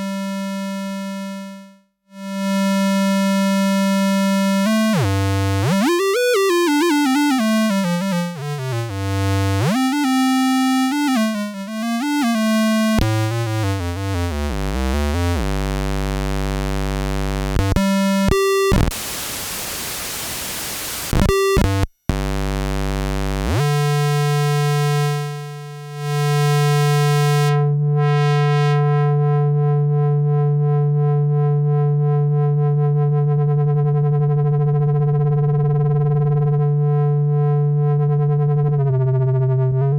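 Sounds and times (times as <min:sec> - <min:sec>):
buzzy low synth note: 0:04.2 - 0:30.4
synthesizer gliding notes: 0:04.6 - 0:13.0
white noise burst: 0:18.9 - 0:21.3.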